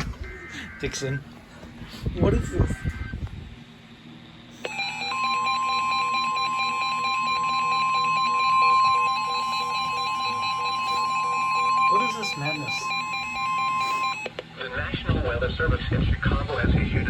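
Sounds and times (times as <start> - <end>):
steady warning alarm tone: 4.6 - 14.4
pulsing electronic alert beeps: 4.7 - 14.3.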